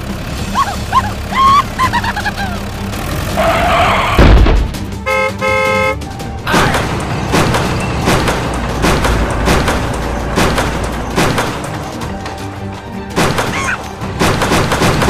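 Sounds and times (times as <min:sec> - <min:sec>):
vehicle horn honking: 0:05.0 - 0:06.0.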